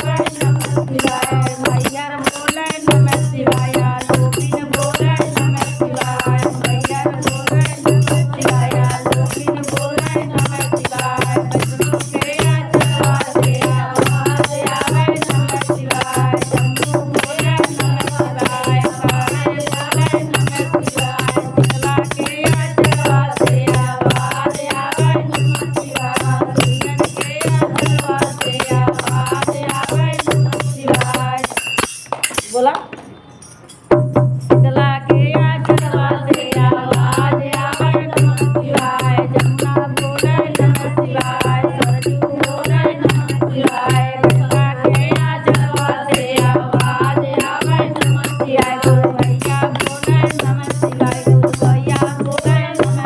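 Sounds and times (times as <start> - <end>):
rattling hand percussion: 0.0 - 53.0
pulsing low drum beat: 2.7 - 31.4, 34.0 - 53.0.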